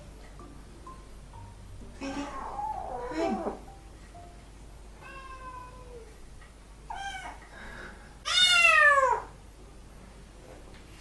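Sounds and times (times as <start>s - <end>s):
kitten meowing: 8.3s - 9.3s.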